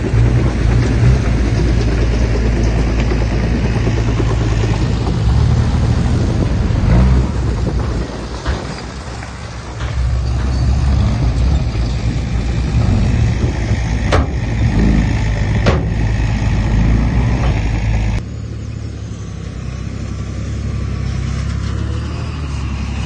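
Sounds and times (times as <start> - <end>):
heavy diesel engine rumbling: 0.0 - 23.0
sharp knocks: 12.8 - 16.4.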